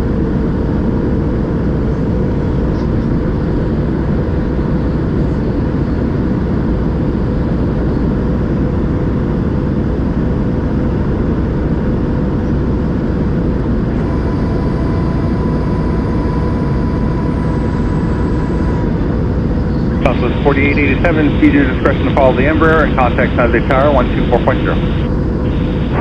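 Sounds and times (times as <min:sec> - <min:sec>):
airflow rush in aircraft cabin: 0:00.0 - 0:26.0
jet engine hum: 0:00.0 - 0:26.0
high-pitched whine: 0:12.3 - 0:26.0.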